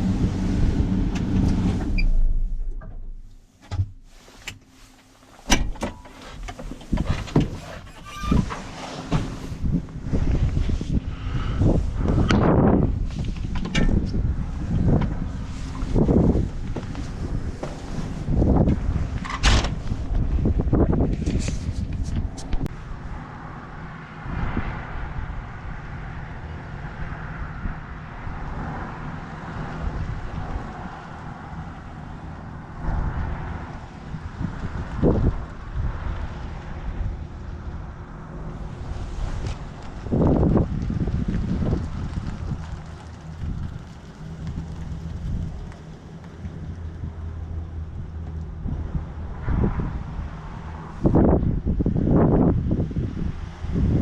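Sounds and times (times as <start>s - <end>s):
diesel engine running: 0.0s - 3.5s
diesel engine rumble: 0.0s - 54.0s.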